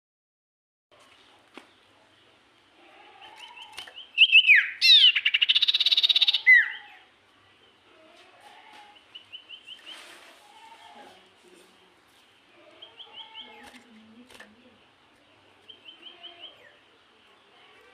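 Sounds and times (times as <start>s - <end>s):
songbird singing: 1.0s - 8.1s, 8.9s - 10.1s, 11.2s - 17.9s.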